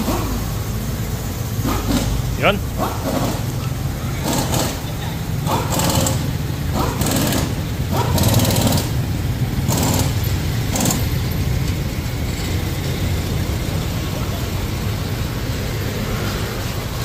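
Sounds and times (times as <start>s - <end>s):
vehicle engine rumbling: 0.0s - 17.0s.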